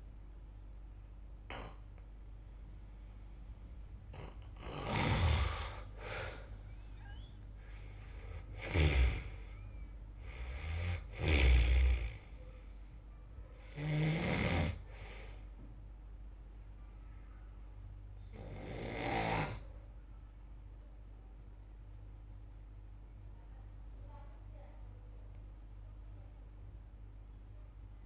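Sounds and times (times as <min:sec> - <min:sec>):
person snoring: 0:01.5 - 0:01.8, 0:04.1 - 0:12.4, 0:13.6 - 0:15.4, 0:18.3 - 0:19.7.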